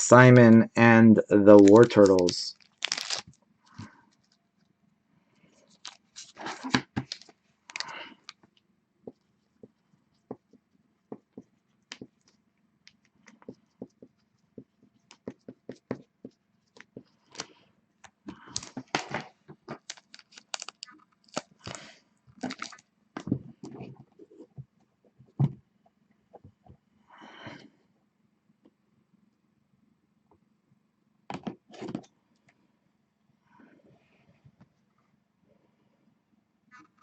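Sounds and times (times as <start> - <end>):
plastic packaging crinkling: 1.6 - 4.4, 5.7 - 8.4, 18.4 - 22.8.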